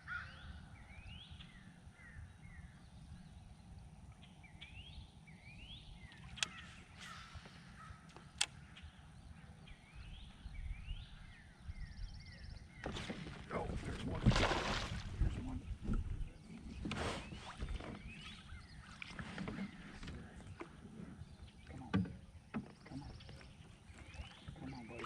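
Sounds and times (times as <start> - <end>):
songbirds whistling: 4.2 - 13.0, 16.3 - 25.0.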